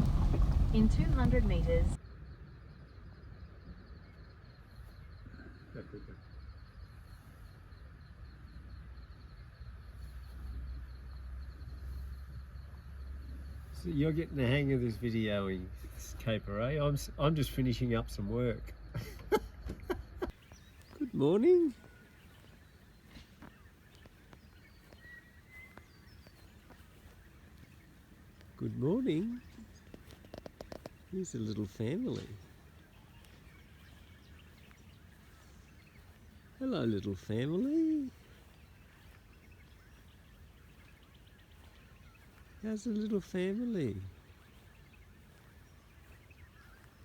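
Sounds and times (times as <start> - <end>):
low steady rumble: 0.0 - 2.0
insect chirping: 0.0 - 14.6, 20.1 - 47.0
faint thin bird calls: 20.3 - 47.0.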